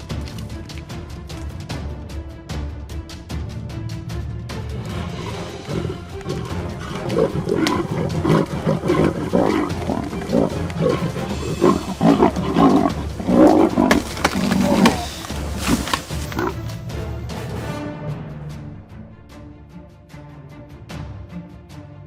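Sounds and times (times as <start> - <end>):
background music: 0.0 - 22.0
big cat growling and snarling: 5.0 - 16.7.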